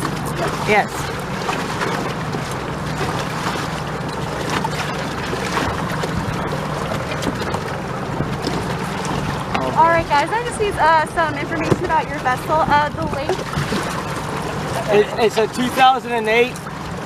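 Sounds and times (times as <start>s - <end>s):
boat engine humming: 0.0s - 17.0s
water rushing: 0.0s - 17.0s
wind on microphone: 4.8s - 14.9s.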